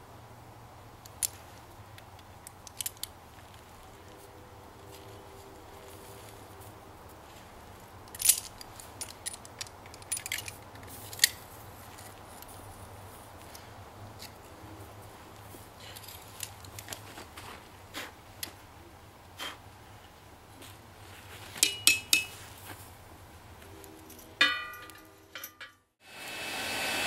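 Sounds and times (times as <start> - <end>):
tools clinking on steel: 8.0 - 11.4, 21.6 - 22.5, 23.7 - 25.9
hair dryer humming: 26.0 - 27.0.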